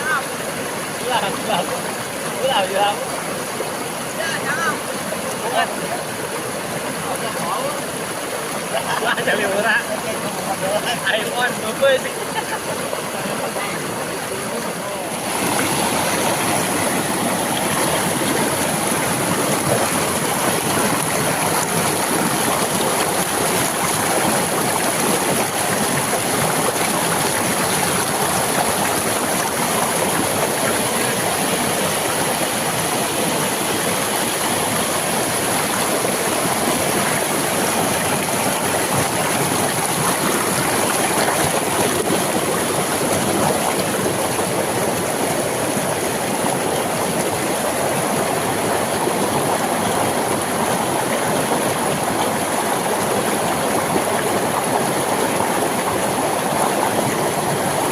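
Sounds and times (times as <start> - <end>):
water rushing over dam: 0.0 - 57.9.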